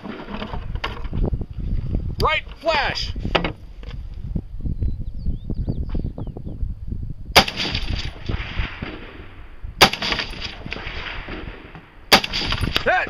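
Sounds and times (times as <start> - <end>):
rifle shots echoing: 7.4 - 13.0.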